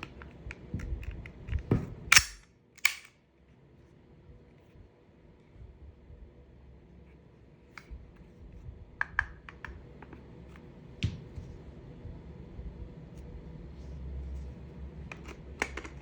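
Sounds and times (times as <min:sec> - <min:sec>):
gas pistol clicking: 0:02.1 - 0:03.1.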